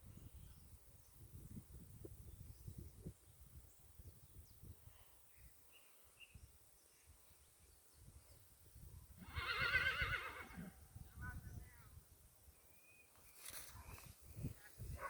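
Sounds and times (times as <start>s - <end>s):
horse whinnying: 9.2s - 10.8s.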